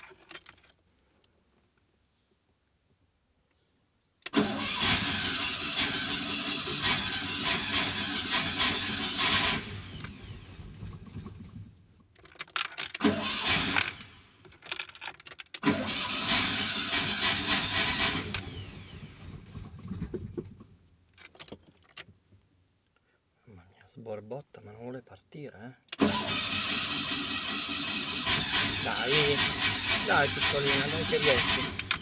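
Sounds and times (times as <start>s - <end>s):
engine cranking and sputtering: 4.2s - 20.8s, 25.9s - 32.0s.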